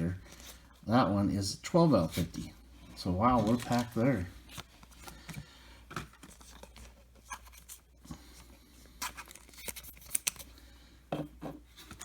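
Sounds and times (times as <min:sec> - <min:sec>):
stiff cards and wrapper rustling: 0:02.0 - 0:08.0, 0:08.9 - 0:10.6.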